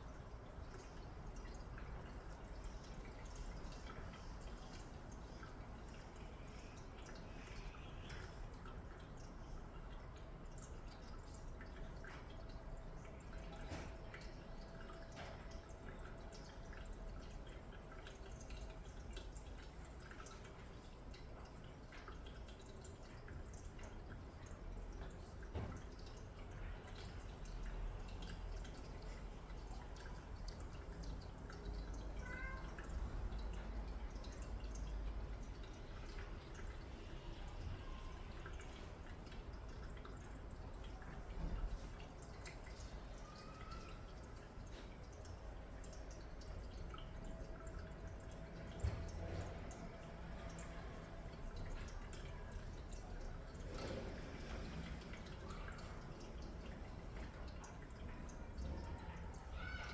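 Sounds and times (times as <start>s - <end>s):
cat lapping water: 0.1s - 59.6s.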